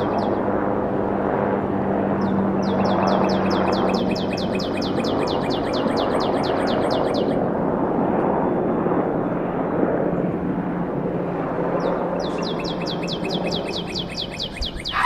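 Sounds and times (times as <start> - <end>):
bird trilling: 0.0 - 0.4, 2.7 - 7.4, 12.3 - 15.0
aircraft engine drone: 0.0 - 15.0.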